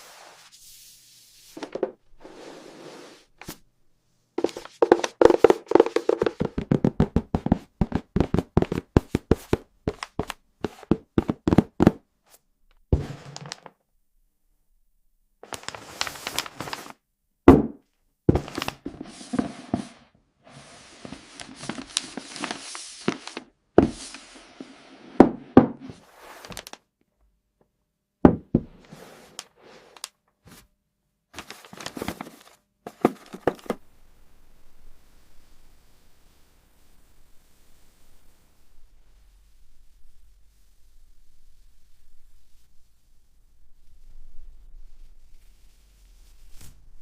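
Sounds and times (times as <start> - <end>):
packaging rustling and scraping: 4.4 - 12.0, 13.0 - 13.7, 15.4 - 17.0, 18.3 - 24.8, 25.9 - 26.8, 31.4 - 33.8
box knocks and thunks: 17.5 - 18.6, 28.3 - 28.8, 32.9 - 33.8.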